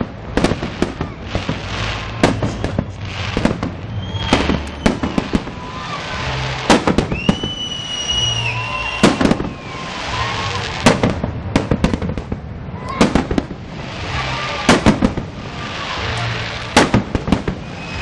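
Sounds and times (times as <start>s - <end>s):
fireworks shells bursting: 0.4s - 18.0s
firework whistle: 0.6s - 11.1s, 13.9s - 18.0s.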